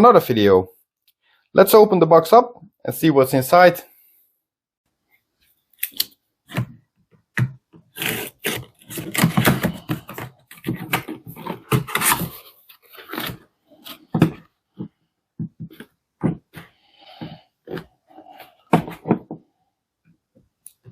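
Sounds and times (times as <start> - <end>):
cardboard rustling and scraping: 7.8 - 19.4.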